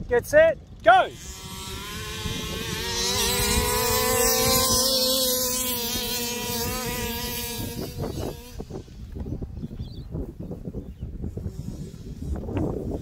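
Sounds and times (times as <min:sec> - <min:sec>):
small two-stroke engines at full throttle: 0:01.1 - 0:09.4.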